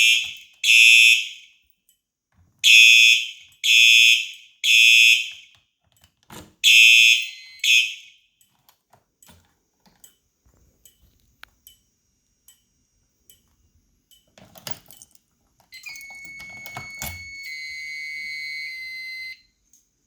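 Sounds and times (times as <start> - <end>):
fire alarm horn blasts: 0.0 - 1.6, 2.6 - 5.5, 6.6 - 8.3, 15.8 - 19.6.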